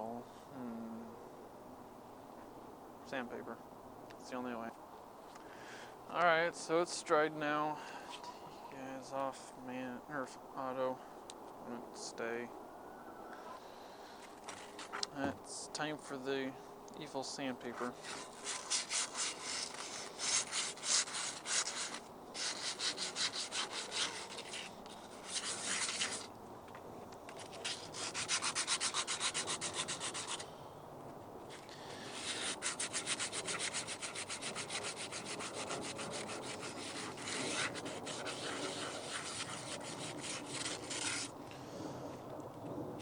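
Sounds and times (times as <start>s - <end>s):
sandpaper rubbing on metal: 17.9s - 26.3s, 27.4s - 30.4s, 31.5s - 41.3s.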